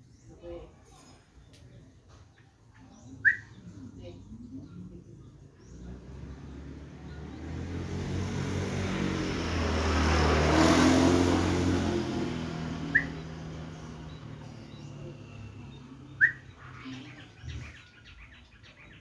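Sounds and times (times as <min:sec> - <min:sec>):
bird chirp: 0:00.0 - 0:08.4, 0:12.1 - 0:19.0
vehicle passing by: 0:05.4 - 0:18.0.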